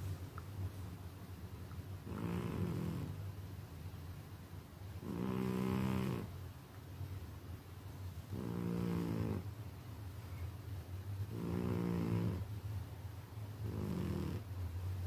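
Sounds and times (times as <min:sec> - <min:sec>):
steady low hum: 0:00.0 - 0:15.0
pitched snoring: 0:02.0 - 0:03.1, 0:05.0 - 0:06.3, 0:08.3 - 0:09.5, 0:11.3 - 0:12.5, 0:13.6 - 0:14.4.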